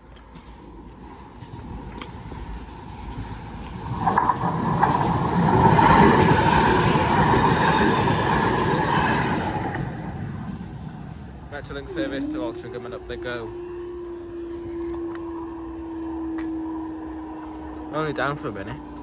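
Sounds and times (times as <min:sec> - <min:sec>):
wheels clicking over rail joints: 0:00.0 - 0:13.6
steady whine: 0:00.0 - 0:19.0
tram passing: 0:00.0 - 0:19.0.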